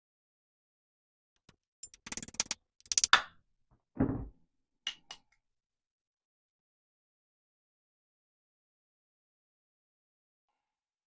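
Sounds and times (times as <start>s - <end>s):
small clicks: 1.4s - 3.2s.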